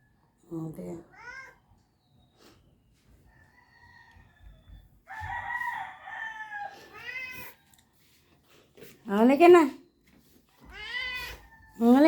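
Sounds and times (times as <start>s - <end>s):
cat meowing: 1.1s - 1.6s, 6.9s - 7.6s, 10.6s - 11.8s
rooster crowing: 3.3s - 7.3s.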